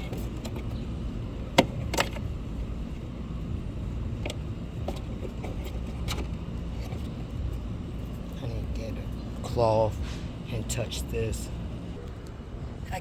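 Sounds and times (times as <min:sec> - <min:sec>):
clicks of tail light being handled: 0:00.0 - 0:02.4, 0:04.1 - 0:07.3
steady low rumble: 0:00.0 - 0:13.0.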